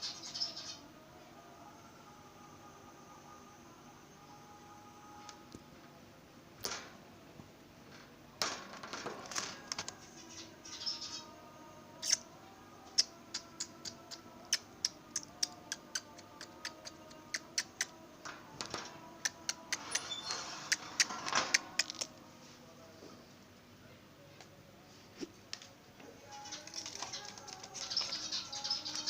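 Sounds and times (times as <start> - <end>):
birds chattering: 19.2 - 22.1, 26.2 - 29.0.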